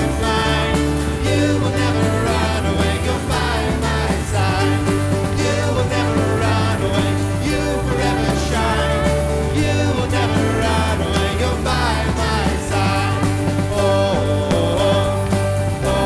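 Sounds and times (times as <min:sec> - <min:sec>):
sung melody: 0:00.0 - 0:16.0
worship song by full band: 0:00.0 - 0:16.0.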